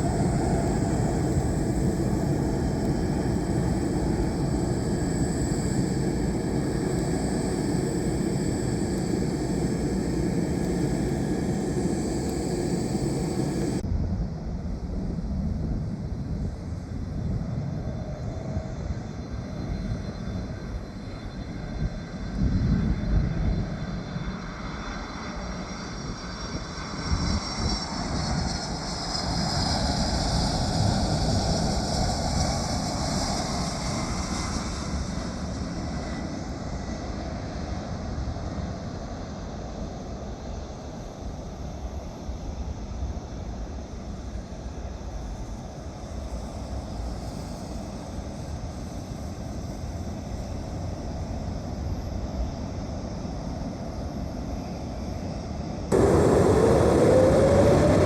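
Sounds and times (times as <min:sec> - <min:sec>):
high engine whine: 0:00.0 - 0:13.8, 0:55.9 - 0:58.0
jet engines rumbling: 0:00.0 - 0:13.8, 0:55.9 - 0:58.0.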